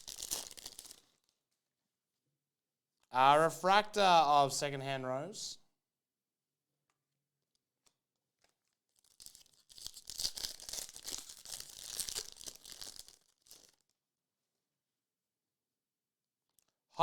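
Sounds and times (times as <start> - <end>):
wrapper tearing and crinkling: 0.0 - 1.4, 7.8 - 14.0.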